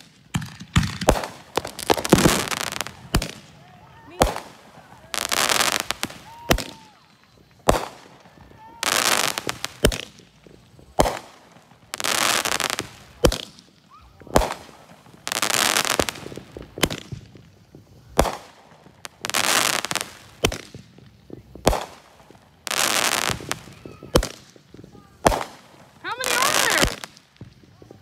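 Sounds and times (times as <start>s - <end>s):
firework bangs: 0.0s - 28.0s
firework hissing crackling bursts: 0.0s - 28.0s.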